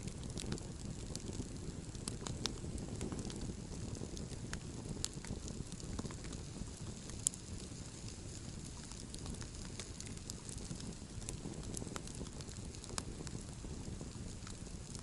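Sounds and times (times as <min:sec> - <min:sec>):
campfire crackling and popping: 0:00.0 - 0:15.0
low steady rumble: 0:00.0 - 0:15.0.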